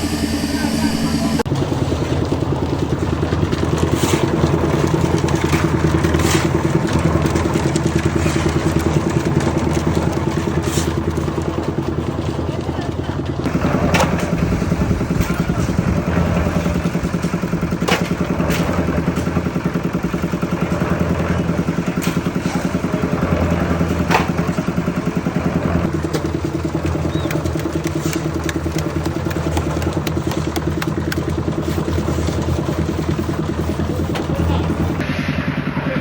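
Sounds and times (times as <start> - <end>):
machinery engine running: 0.0 - 36.0.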